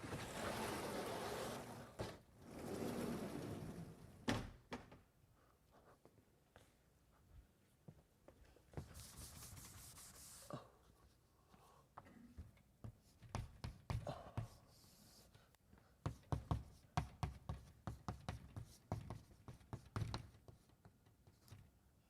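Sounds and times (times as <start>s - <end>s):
chalk on blackboard: 8.8s - 10.5s, 12.9s - 15.4s, 16.0s - 21.6s.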